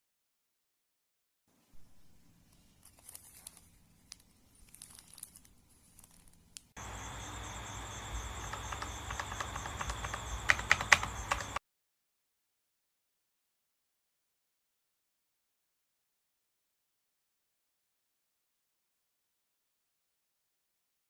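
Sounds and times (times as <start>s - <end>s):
crinkling and clicking handling: 2.5s - 6.8s, 8.3s - 11.6s
sharp clicks: 6.6s - 11.6s
hissy high whine: 6.8s - 9.8s.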